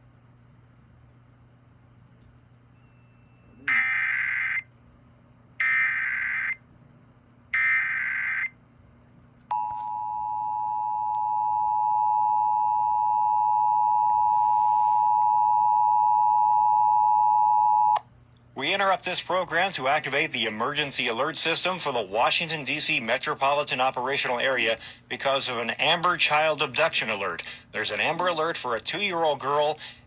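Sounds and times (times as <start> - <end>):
steady dual alert tone: 2.8 - 4.7, 5.6 - 6.6, 7.5 - 8.6
screechy digital header bursts: 3.5 - 4.6, 5.6 - 6.6, 7.6 - 8.5.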